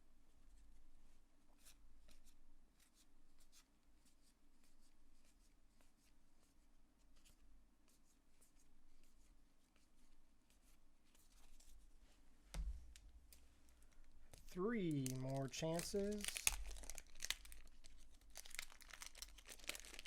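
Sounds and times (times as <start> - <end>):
low electrical hum: 8.5 - 20.0.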